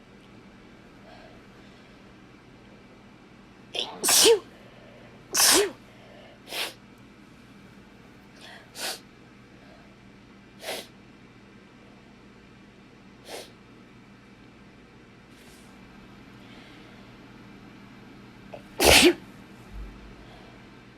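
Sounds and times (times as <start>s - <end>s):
person sneezing: 3.8s - 4.5s, 5.4s - 5.8s, 6.5s - 6.8s, 8.8s - 9.0s, 10.6s - 10.9s, 13.3s - 13.6s, 18.6s - 19.2s.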